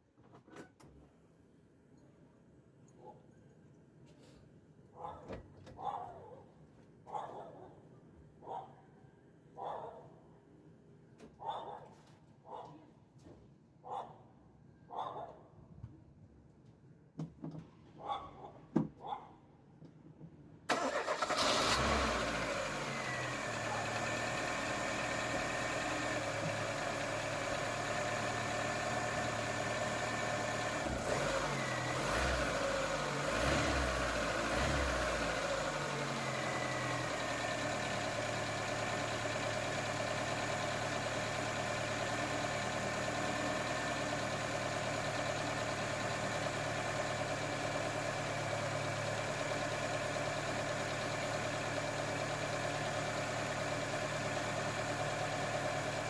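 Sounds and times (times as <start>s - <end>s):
petrol engine idling: 20.7s - 56.0s.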